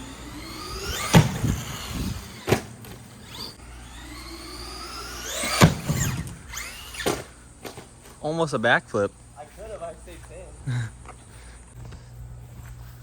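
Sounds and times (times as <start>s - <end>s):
toy truck electric motor whining: 0.0s - 7.8s
truck hitting ramp: 0.4s - 3.5s, 4.2s - 7.3s.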